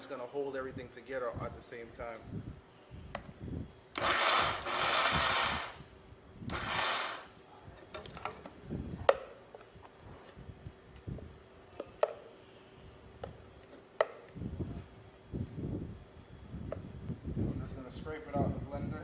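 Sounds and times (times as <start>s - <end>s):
blender grinding thick mixture: 4.0s - 5.8s, 6.5s - 7.3s.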